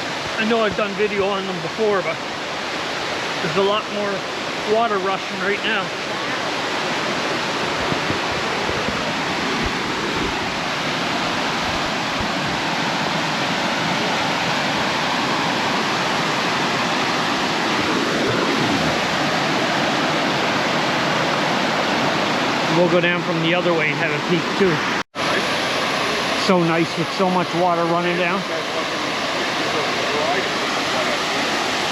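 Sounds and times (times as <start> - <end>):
waterfall rushing: 0.0 - 31.9.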